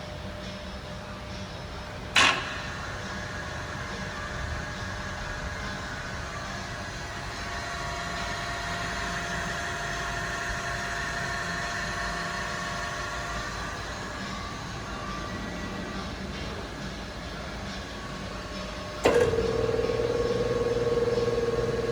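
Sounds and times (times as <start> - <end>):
surface grinder machine hum: 18.9 - 21.9.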